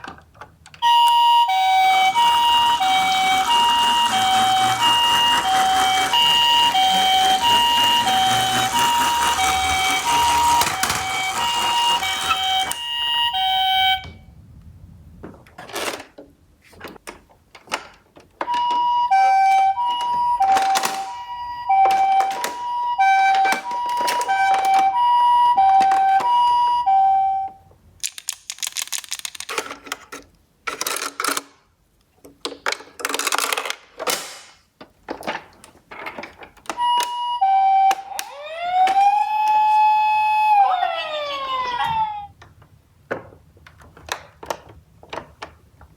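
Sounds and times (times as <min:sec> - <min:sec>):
toy two-tone electronic siren: 0:00.8 - 0:14.2, 0:18.5 - 0:27.6, 0:36.8 - 0:42.3.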